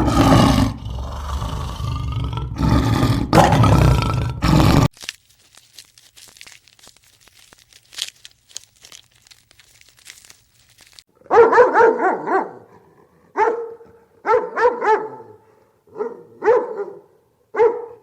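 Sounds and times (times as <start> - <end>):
dog barking: 11.2 - 18.0.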